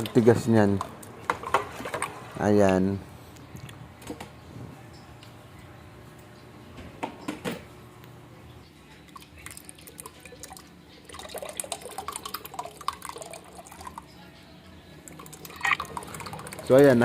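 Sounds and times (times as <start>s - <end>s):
milk pouring and splashing: 9.1s - 14.0s, 15.0s - 16.9s.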